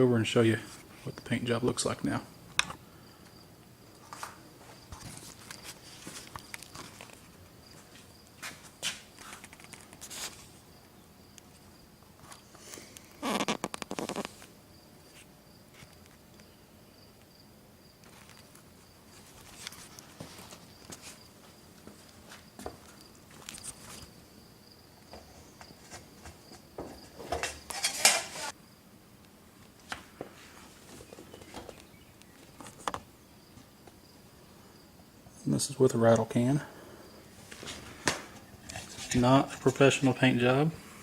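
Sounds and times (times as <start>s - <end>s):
cricket trilling: 1.1s - 4.1s, 4.8s - 8.4s, 10.7s - 12.5s, 13.1s - 19.1s, 22.4s - 28.9s, 31.3s - 40.7s
footsteps: 4.0s - 10.4s, 19.2s - 24.1s, 37.4s - 40.2s.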